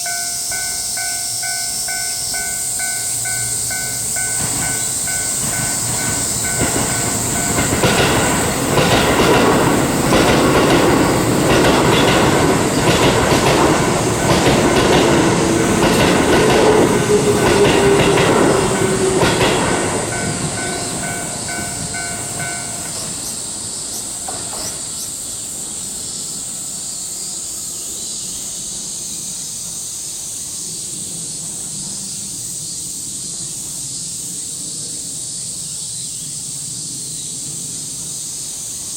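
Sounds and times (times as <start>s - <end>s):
crossing warning bell ringing: 0.0s - 24.8s
train wheels clacking on rails: 0.0s - 27.3s
high-pitched insect drone: 0.0s - 38.9s.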